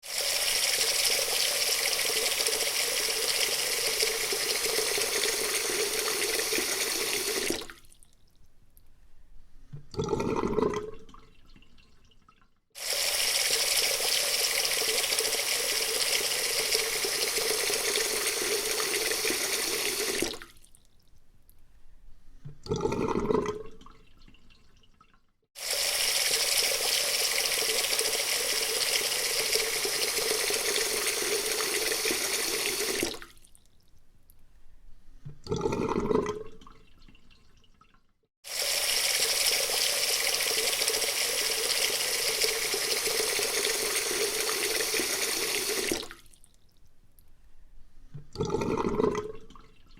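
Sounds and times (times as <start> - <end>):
water running from a tap: 0.0 - 7.7, 12.8 - 20.4, 25.6 - 33.2, 38.5 - 46.1.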